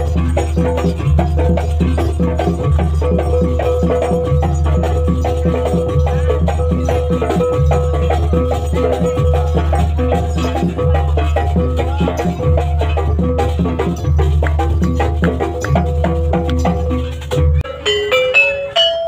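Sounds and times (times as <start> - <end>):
fast dense percussion: 0.0 - 19.0
held higher tone: 17.6 - 19.0.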